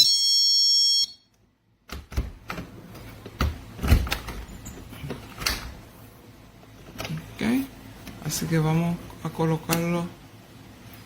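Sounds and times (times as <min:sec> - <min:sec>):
door knocks and thumps: 0:01.9 - 0:04.6.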